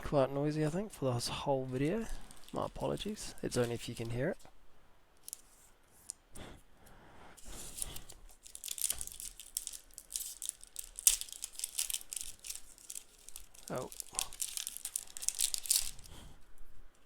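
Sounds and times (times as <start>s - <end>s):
foil wrapper tearing and crinkling: 1.9s - 3.7s, 7.4s - 16.3s.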